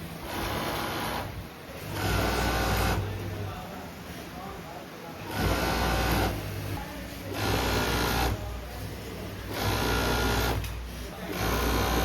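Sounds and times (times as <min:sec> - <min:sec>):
sewing machine stitching: 0:00.2 - 0:03.1, 0:05.3 - 0:06.7, 0:07.3 - 0:08.4, 0:09.5 - 0:10.7, 0:11.3 - 0:12.0.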